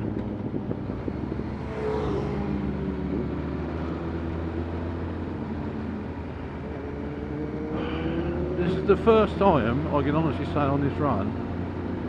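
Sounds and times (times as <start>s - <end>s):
wind noise: 0.0s - 3.5s.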